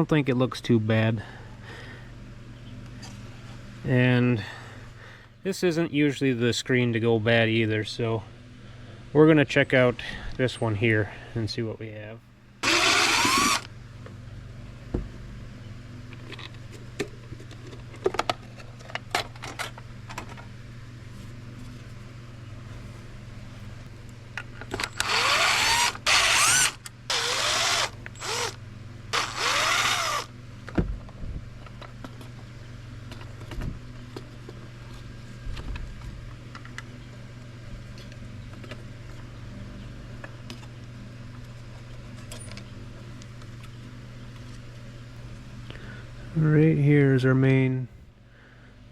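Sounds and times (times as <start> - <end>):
cordless drill spinning: 12.6 - 13.7, 24.8 - 30.3.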